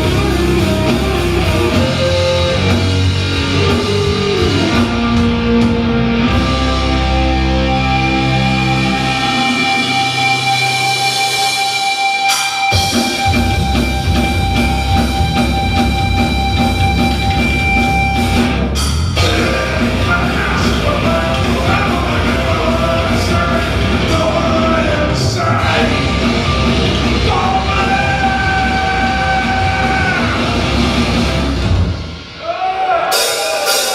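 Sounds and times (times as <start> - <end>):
bass guitar: 0.0 - 33.9
distorted electric guitars: 0.0 - 33.9
drums: 0.0 - 33.9
shouted vocals: 27.2 - 30.8, 32.4 - 33.9.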